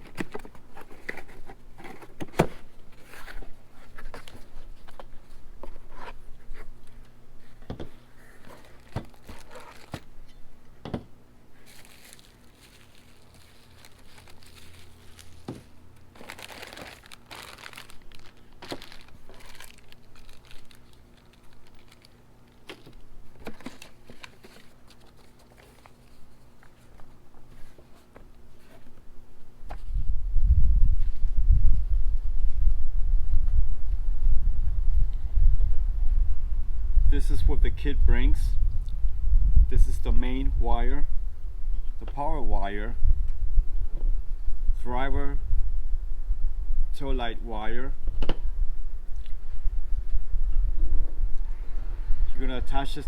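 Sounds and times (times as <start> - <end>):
plastic bags crinkling and tearing: 8.4 - 10.1, 11.6 - 26.8.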